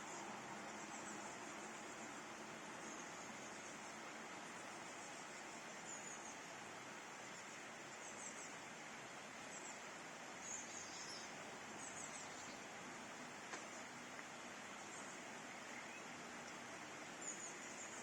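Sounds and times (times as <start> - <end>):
bird chirping: 10.4 - 12.6, 14.9 - 16.1.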